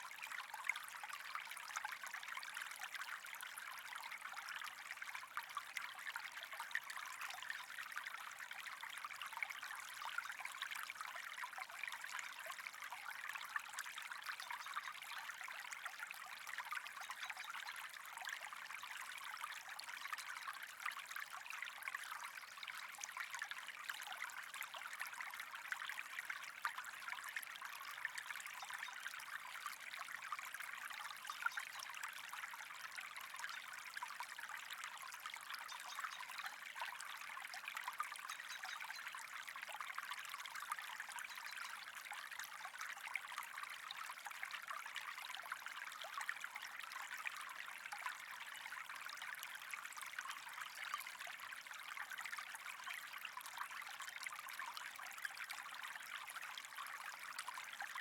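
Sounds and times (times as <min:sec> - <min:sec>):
water trickling and bubbling: 0:00.0 - 0:58.0.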